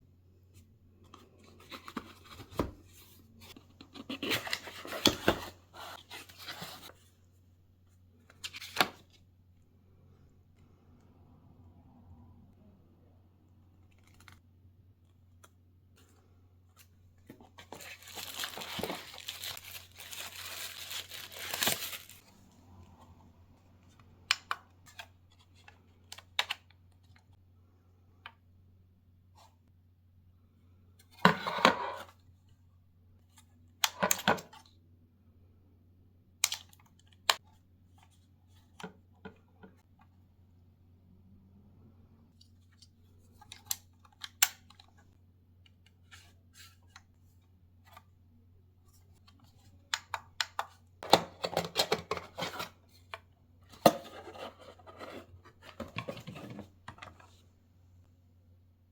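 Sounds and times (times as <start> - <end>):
faint low hum: 0.0 - 31.2
packaging tearing and crinkling: 17.8 - 22.2.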